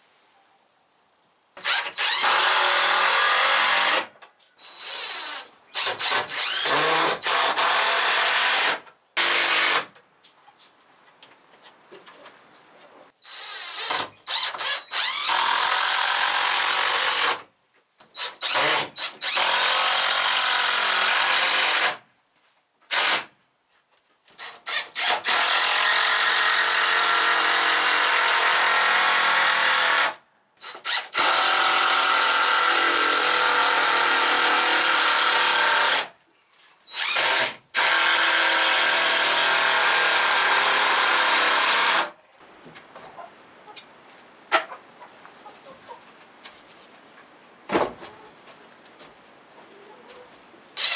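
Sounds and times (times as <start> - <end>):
power drill running: 24.7 - 36.1, 36.9 - 42.1.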